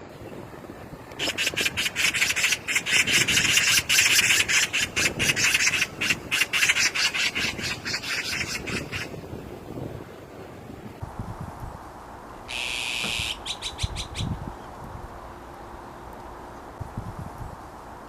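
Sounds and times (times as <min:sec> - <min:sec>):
magpie chattering: 0:01.2 - 0:09.1, 0:12.5 - 0:14.4.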